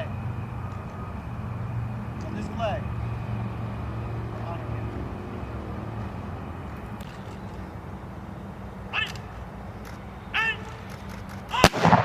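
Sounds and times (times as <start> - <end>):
distant commander shouting: 8.8 - 9.5, 10.2 - 12.0
rifle volley: 9.0 - 12.0.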